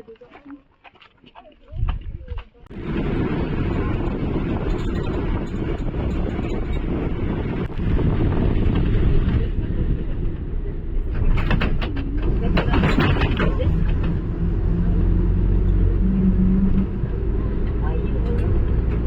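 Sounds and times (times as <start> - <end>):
vehicle engine hum and road rumble: 1.8 - 19.0
sharp clattering: 10.9 - 14.4.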